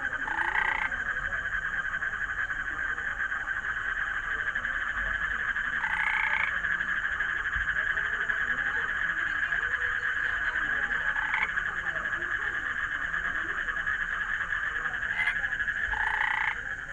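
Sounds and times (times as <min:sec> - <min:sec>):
frogs trilling: 0:00.0 - 0:16.9.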